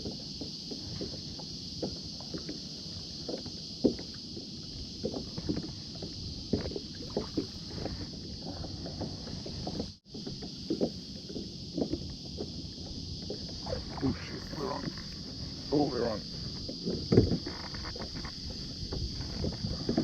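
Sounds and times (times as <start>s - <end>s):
steady hiss: 0.0s - 20.0s
paddle splashing in water: 0.8s - 20.0s
paddle knocking against hull: 5.0s - 20.0s.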